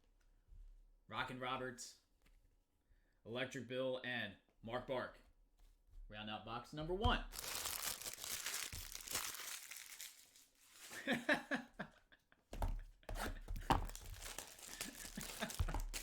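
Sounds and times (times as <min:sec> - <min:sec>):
wrapper crinkling: 0:07.2 - 0:11.1, 0:13.7 - 0:16.0
wrapper ripping: 0:07.3 - 0:11.0, 0:13.8 - 0:16.0.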